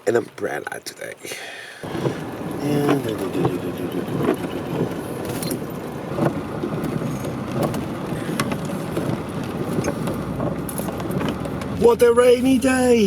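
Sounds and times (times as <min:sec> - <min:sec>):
vehicle engine rumble: 0:01.8 - 0:13.0
light clicks and ticks: 0:02.8 - 0:11.8.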